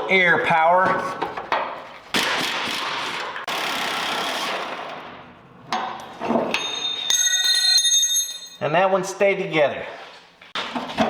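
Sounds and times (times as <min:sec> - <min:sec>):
pneumatic impact wrench hammering: 0:02.1 - 0:05.2.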